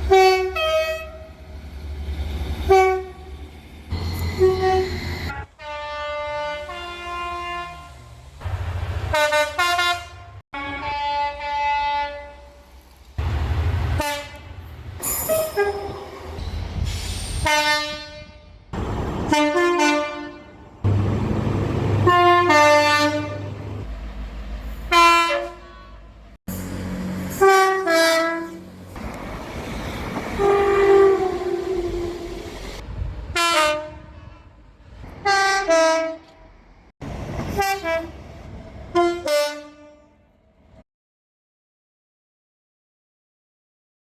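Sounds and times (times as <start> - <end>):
two-tone train horn blasts: 0.0 - 1.4, 2.6 - 3.3, 4.0 - 8.1, 9.1 - 12.7, 13.9 - 14.6, 17.4 - 23.8, 24.9 - 29.0, 30.2 - 34.5, 35.2 - 36.5, 37.5 - 38.2, 38.9 - 40.4
diesel engine rumble: 0.0 - 10.4, 18.8 - 19.9, 20.5 - 35.3.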